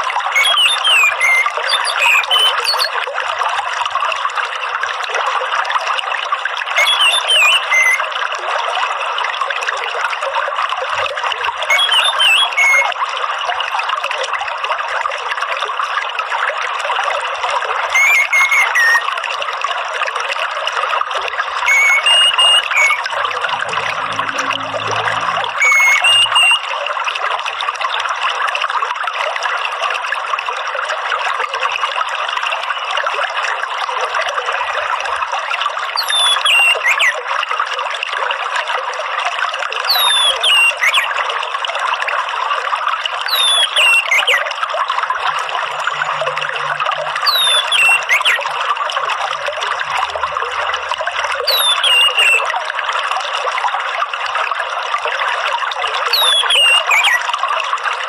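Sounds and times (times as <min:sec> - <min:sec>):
running water trickling: 0:00.0 - 0:58.0
bird whistle sliding down: 0:00.4 - 0:02.9, 0:06.8 - 0:08.0, 0:11.7 - 0:12.8, 0:18.0 - 0:19.0, 0:21.7 - 0:26.6, 0:39.9 - 0:41.1, 0:47.2 - 0:48.4, 0:51.5 - 0:52.4.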